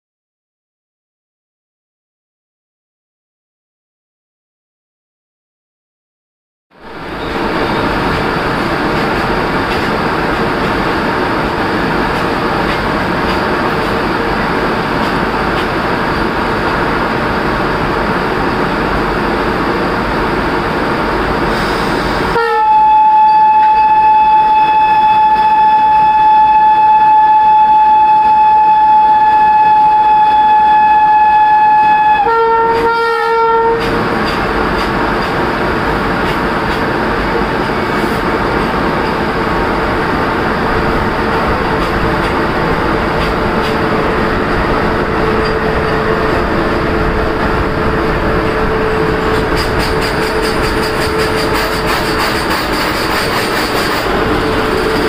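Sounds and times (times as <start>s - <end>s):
train rolling: 6.8s - 55.0s
locomotive horn blast: 21.6s - 34.0s.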